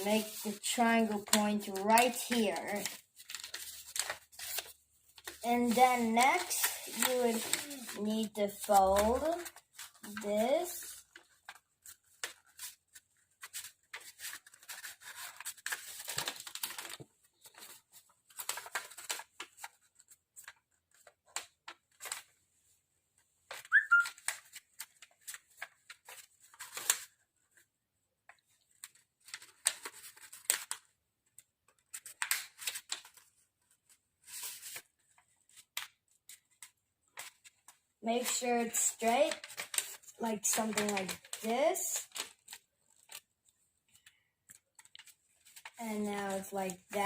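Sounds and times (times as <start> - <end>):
paper crease scraping: 0.0 - 17.7
paper rustling and crinkling: 0.0 - 47.0.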